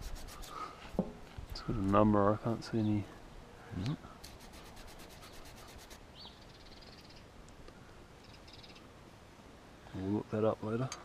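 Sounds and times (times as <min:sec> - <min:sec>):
bird chirping and twittering: 0:06.1 - 0:07.3, 0:08.2 - 0:08.9.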